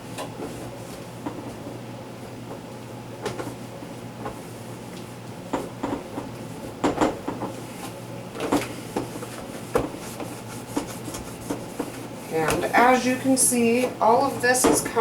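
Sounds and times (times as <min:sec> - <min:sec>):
knocks against plastic refrigerator walls: 0:05.6 - 0:07.5.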